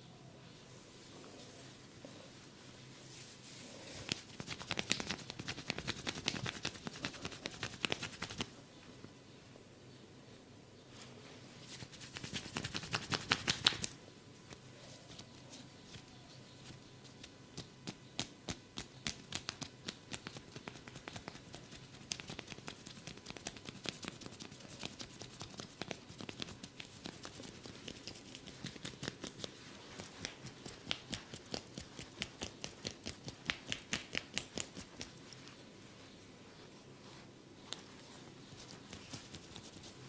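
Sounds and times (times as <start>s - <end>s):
hands tapping during massage: 4.1s - 8.5s, 11.9s - 14.0s, 16.6s - 35.4s.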